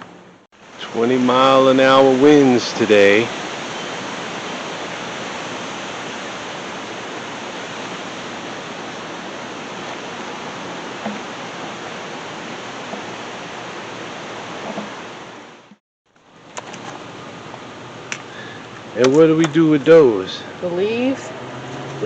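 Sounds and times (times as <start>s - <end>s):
faint knocks: 14.6s - 15.0s.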